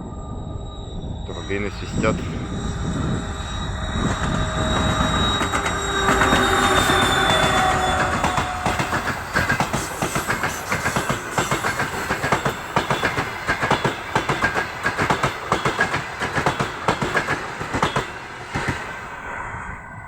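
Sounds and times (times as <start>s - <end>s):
locomotive turbocharger whistle: 0.9s - 10.8s
train wheels clattering over rail joints: 4.8s - 18.8s.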